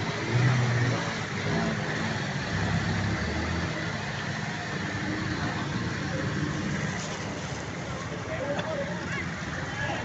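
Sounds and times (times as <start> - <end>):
vehicle engines idling: 0.0 - 10.0.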